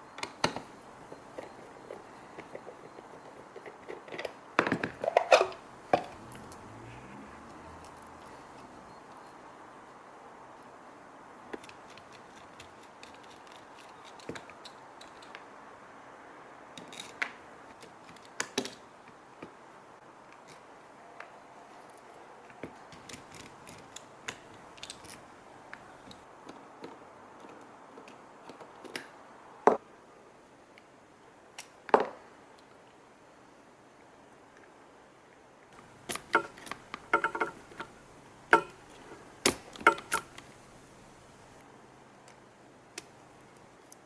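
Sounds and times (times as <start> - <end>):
hand tools clicking: 36.0 - 40.6.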